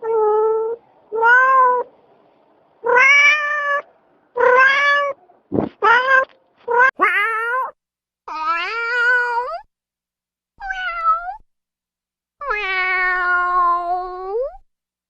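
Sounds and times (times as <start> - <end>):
cat meowing: 0.0 - 1.9, 2.8 - 5.2, 5.8 - 9.7, 10.6 - 11.4, 12.4 - 14.6.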